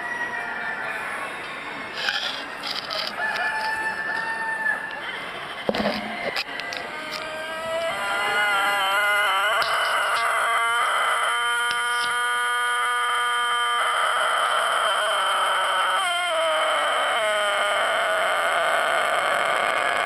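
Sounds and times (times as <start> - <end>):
rooster crowing: 1.9 - 5.0, 5.9 - 20.0.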